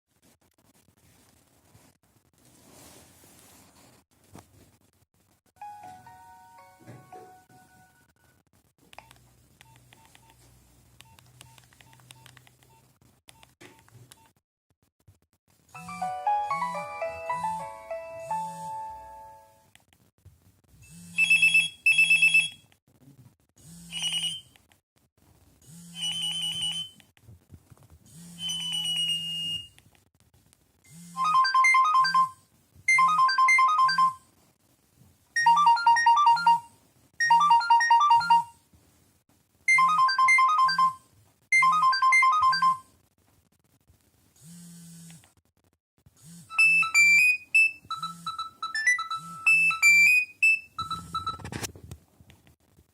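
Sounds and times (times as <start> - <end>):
phone ringtone beeps: 15.8 - 19.5, 20.9 - 22.6, 23.9 - 24.5, 25.9 - 27.0, 28.4 - 29.7, 31.1 - 34.3, 35.4 - 38.6, 39.7 - 41.0, 41.6 - 42.9, 46.5 - 51.7
phone ringtone tune: 15.8 - 19.6, 21.1 - 22.6, 23.9 - 24.5, 26.0 - 27.0, 28.4 - 29.7, 31.1 - 34.3, 35.4 - 38.6, 39.7 - 41.0, 41.6 - 42.9, 46.5 - 51.6.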